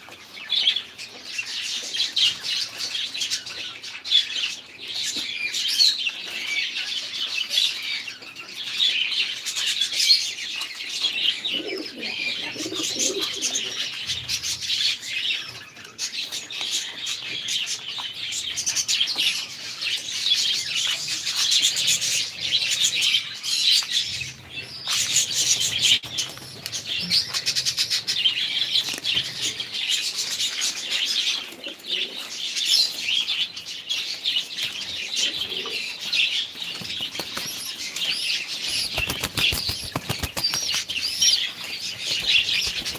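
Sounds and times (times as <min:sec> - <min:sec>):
small birds chirping: 0:00.0 - 0:42.9
wings fluttering: 0:36.6 - 0:42.9.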